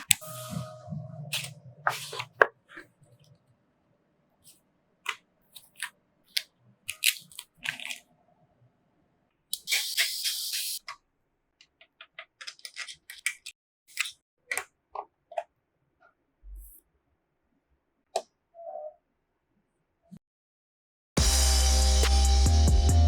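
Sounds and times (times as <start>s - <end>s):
packaging rustling: 6.9s - 8.1s.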